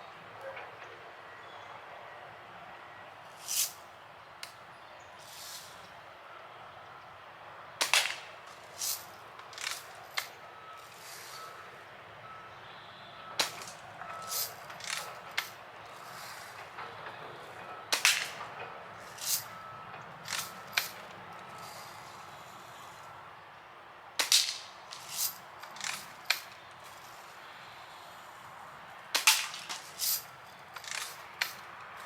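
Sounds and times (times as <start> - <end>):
faint repeating beep: 10.4 - 14.6.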